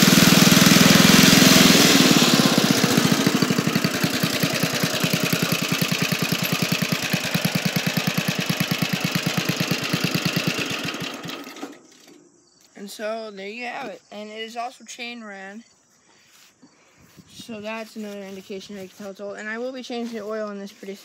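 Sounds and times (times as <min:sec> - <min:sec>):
lawnmower engine idling: 0:00.0 - 0:14.0.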